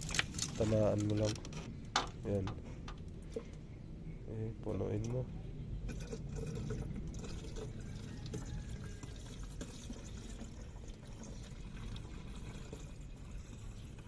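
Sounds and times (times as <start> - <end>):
water pouring into radiator: 0.0 - 1.4, 5.9 - 14.0.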